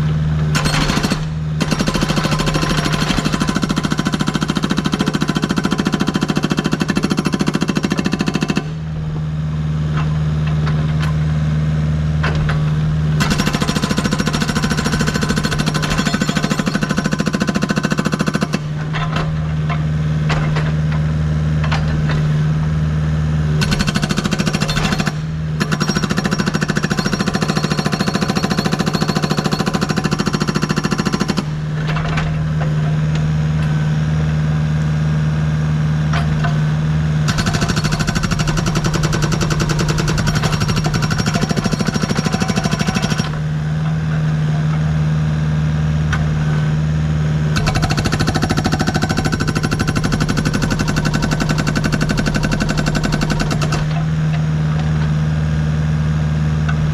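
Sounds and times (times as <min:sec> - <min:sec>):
hydraulic breaker hammering rock: 0:00.4 - 0:08.9, 0:12.2 - 0:21.0, 0:23.6 - 0:33.8, 0:36.1 - 0:44.8, 0:47.5 - 0:55.2
excavator engine droning: 0:31.4 - 0:56.9.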